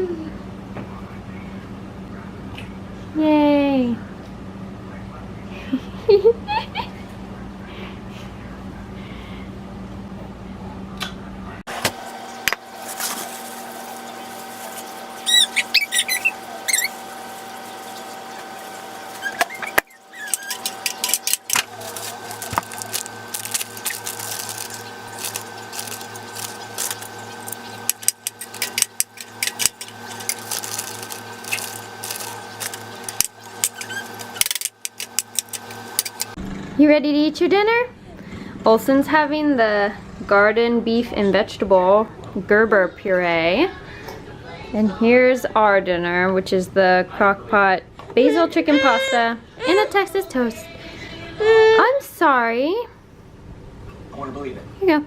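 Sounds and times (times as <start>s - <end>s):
steady electrical hum: 0.0s - 55.0s
high squeaks: 15.2s - 17.1s, 18.3s - 36.4s, 48.3s - 49.8s.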